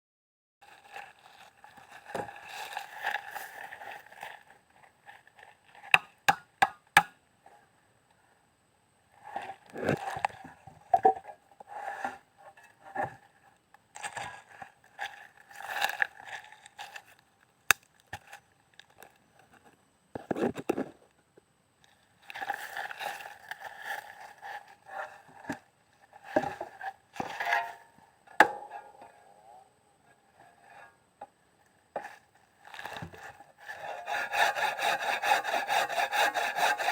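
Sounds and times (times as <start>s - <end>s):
saw cutting wood: 33.6s - 36.9s.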